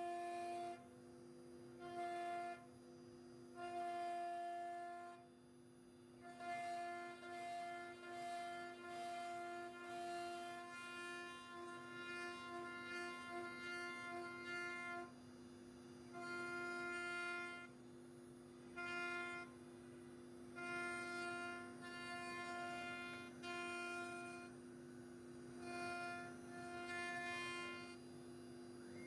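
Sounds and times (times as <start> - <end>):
router bit cutting wood: 6.4 - 15.0, 20.6 - 24.5, 25.6 - 28.0.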